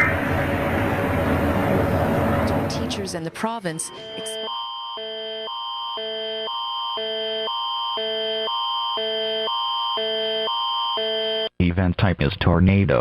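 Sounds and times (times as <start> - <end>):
emergency alert signal tones: 2.5 - 11.5.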